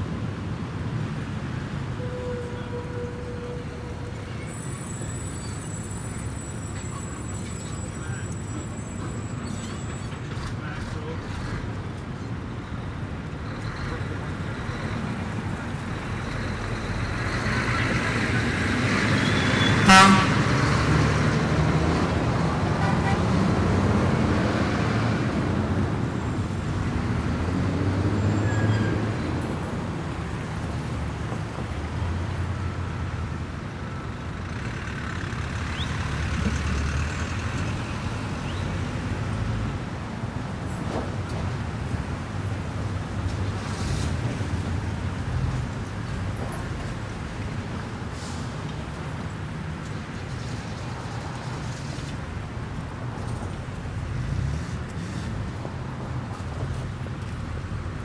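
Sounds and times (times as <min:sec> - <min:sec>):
traffic rumble: 0:00.0 - 0:58.0
car horn toot: 0:19.6 - 0:20.7, 0:22.8 - 0:23.5.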